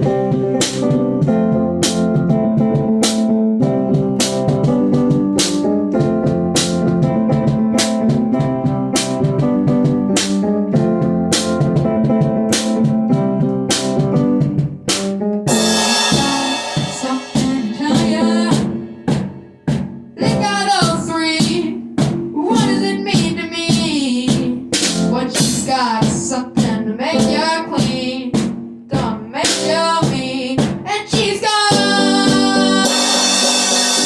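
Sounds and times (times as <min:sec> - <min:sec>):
rock band playing: 0:00.0 - 0:20.5, 0:24.8 - 0:25.8, 0:31.7 - 0:34.0
drum kit snare and bass drum: 0:00.0 - 0:34.0
pitch-bending melody line: 0:15.5 - 0:19.0, 0:31.7 - 0:34.0.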